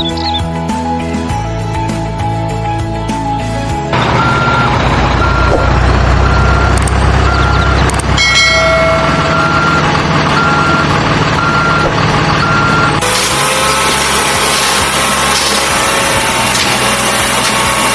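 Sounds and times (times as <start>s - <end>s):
truck engine running: 0.0s - 17.9s
truck reversing alarm beeping: 3.9s - 17.9s.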